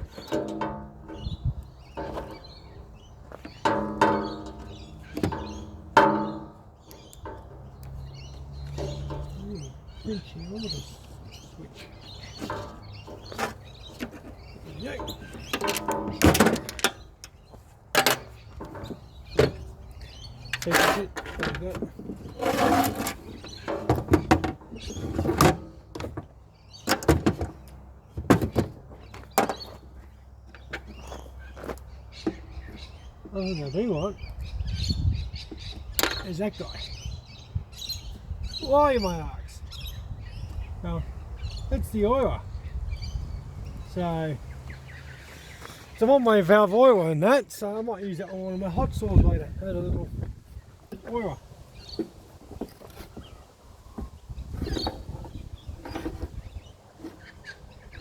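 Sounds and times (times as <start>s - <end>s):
metal parts knocking and clinking: 0.1s - 1.3s, 15.0s - 17.1s.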